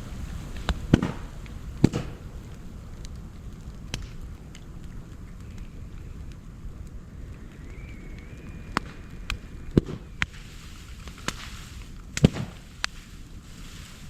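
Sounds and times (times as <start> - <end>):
bamboo fire crackling and popping: 0.0 - 14.0.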